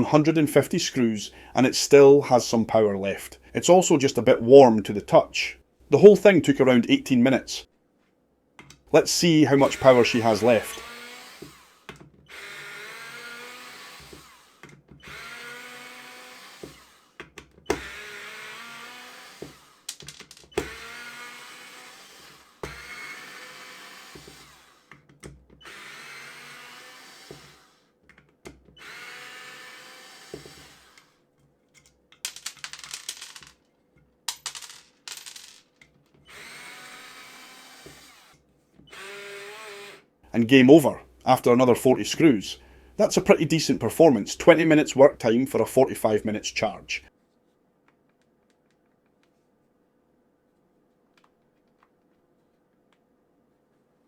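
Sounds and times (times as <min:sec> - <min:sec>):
electric screwdriver motor whine: 0:09.6 - 0:19.9, 0:20.6 - 0:24.9, 0:25.6 - 0:27.9, 0:28.8 - 0:31.2, 0:36.3 - 0:40.0.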